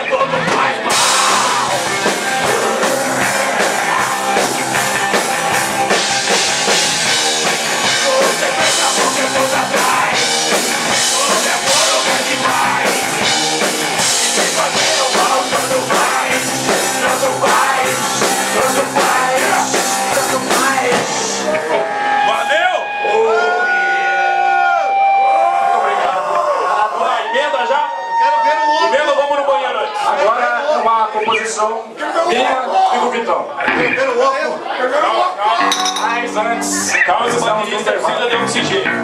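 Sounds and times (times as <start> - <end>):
live rock band playing: 0.0 - 23.0, 35.6 - 37.5, 38.1 - 39.0
drums and cymbals: 0.4 - 21.6.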